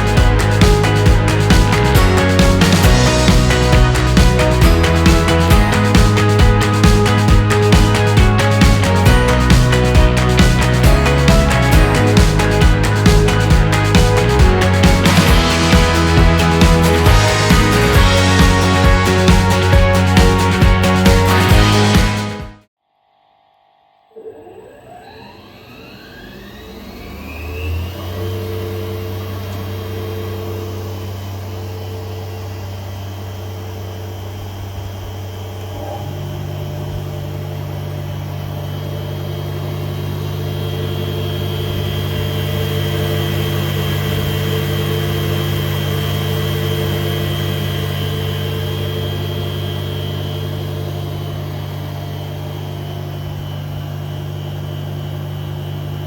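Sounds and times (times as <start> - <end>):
lower motor hum: 0.0 - 22.2, 23.1 - 56.0
table saw motor whining: 23.9 - 56.0.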